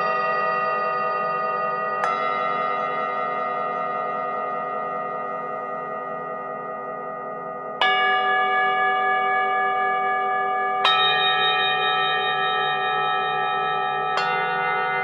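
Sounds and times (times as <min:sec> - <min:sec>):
singing bowl ringing: 0:00.0 - 0:15.0.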